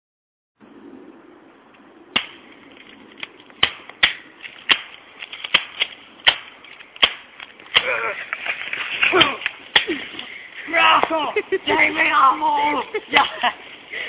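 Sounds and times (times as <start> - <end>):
sharp shot-like cracks: 2.1 - 2.5, 3.6 - 8.0.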